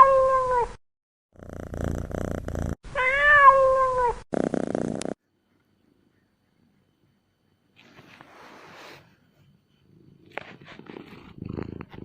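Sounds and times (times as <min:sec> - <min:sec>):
cat meowing: 0:00.0 - 0:00.7, 0:02.9 - 0:04.2
cat purring: 0:01.4 - 0:02.8, 0:04.3 - 0:05.2, 0:09.7 - 0:12.0.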